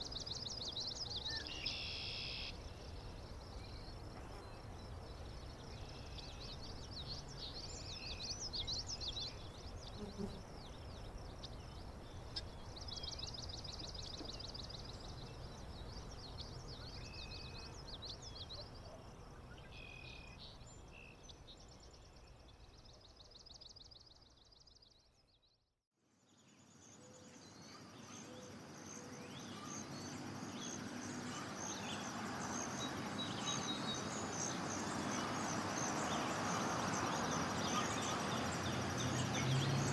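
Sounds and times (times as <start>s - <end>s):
birds trilling: 29.4s - 39.9s.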